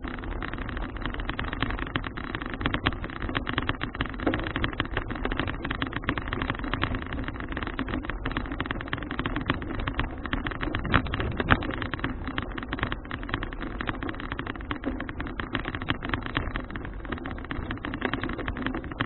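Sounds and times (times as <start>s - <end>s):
bicycle rattling over road: 0.0s - 19.0s
loud knocks: 10.3s - 13.9s
wind on microphone: 10.5s - 13.4s.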